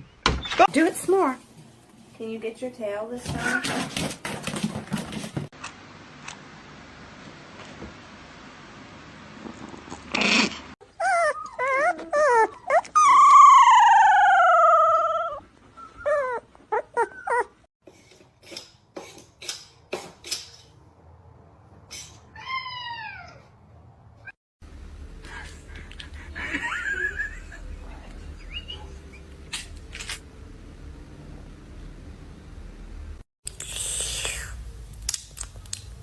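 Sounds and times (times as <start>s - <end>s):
cat meowing: 22.3s - 23.5s.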